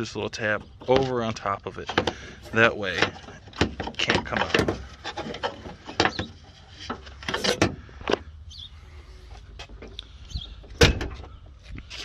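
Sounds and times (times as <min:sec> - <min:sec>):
clicks of plastic and metal parts: 0:01.8 - 0:08.3.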